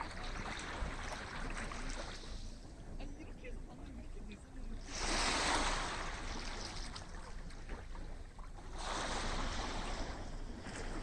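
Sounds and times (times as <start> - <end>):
sea waves washing up beach: 4.8 - 7.7, 8.6 - 11.0.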